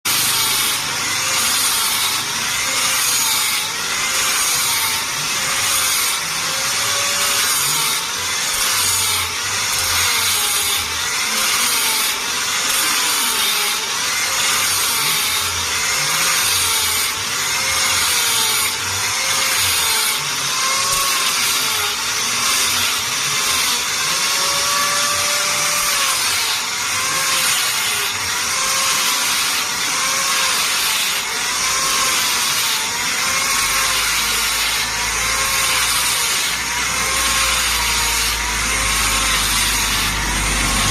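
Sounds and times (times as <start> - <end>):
power tool cutting wood: 0.0 - 40.9.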